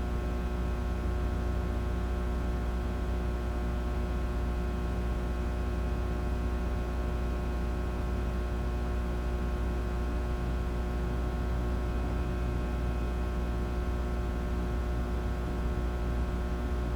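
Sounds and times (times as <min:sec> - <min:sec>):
fluorescent light buzzing: 0:04.0 - 0:16.9.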